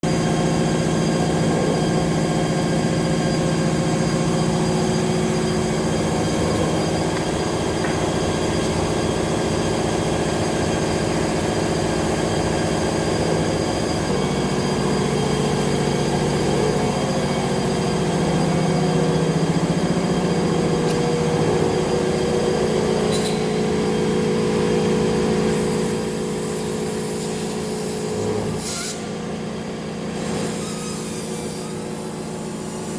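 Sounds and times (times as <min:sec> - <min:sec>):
machine hum of held tones: 0:00.1 - 0:32.9.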